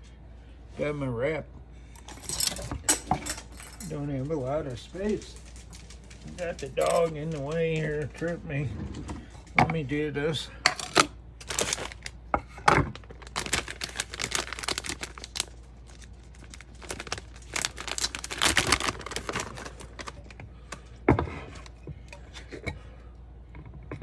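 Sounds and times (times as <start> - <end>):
packaging crinkling and rustling: 3.5 - 8.5, 10.8 - 21.8.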